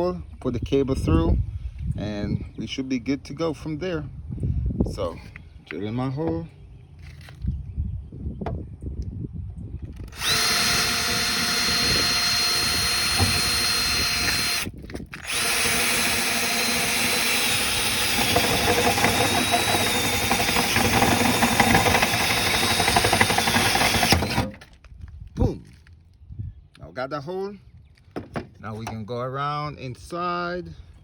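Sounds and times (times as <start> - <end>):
power drill boring through metal: 10.0 - 24.7.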